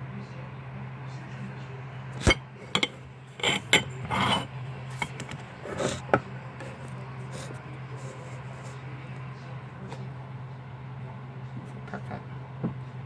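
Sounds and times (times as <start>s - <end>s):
steady low hum: 0.0s - 13.0s
kitchen items clicking: 2.2s - 4.3s
rustling scrapes: 2.7s - 9.0s.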